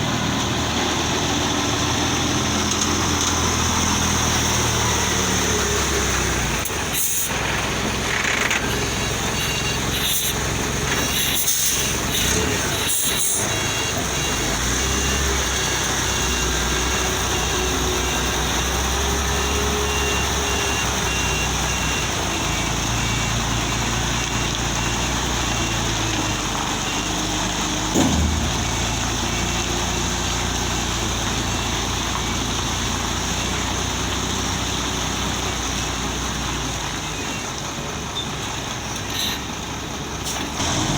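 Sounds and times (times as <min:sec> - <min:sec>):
heavy truck engine running: 0:00.0 - 0:40.9
road traffic: 0:00.0 - 0:40.9
sharp knock: 0:28.0 - 0:29.3.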